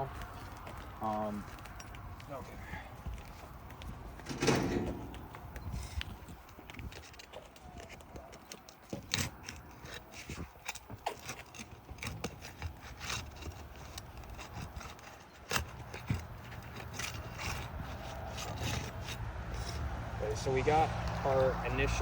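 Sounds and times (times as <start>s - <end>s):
roof shingle being pried off: 4.2s - 5.5s, 6.4s - 19.8s
scraping: 4.2s - 20.0s.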